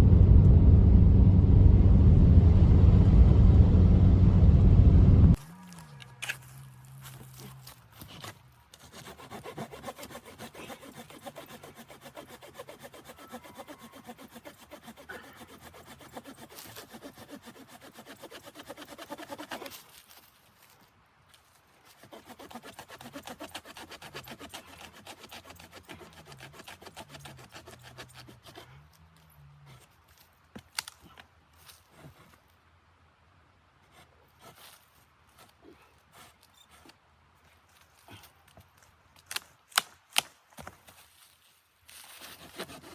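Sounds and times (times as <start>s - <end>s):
wood being sawn by hand: 8.0s - 19.8s, 22.0s - 28.8s, 42.2s - 42.9s.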